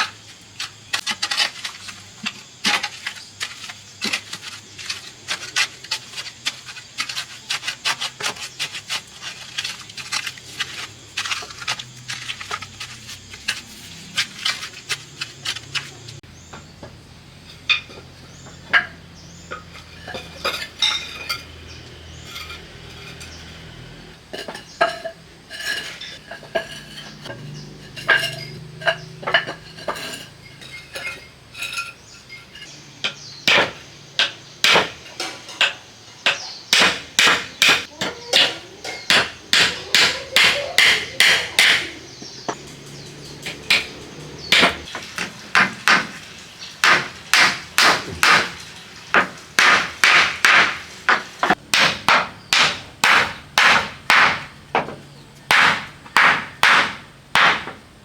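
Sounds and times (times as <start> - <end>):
hammer striking nails: 33.5 - 35.0, 36.3 - 38.5, 39.1 - 41.9, 46.8 - 48.6, 49.2 - 57.8.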